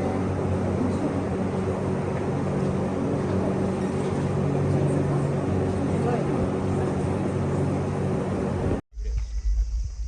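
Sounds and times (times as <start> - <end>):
low mechanical hum: 0.0 - 10.0.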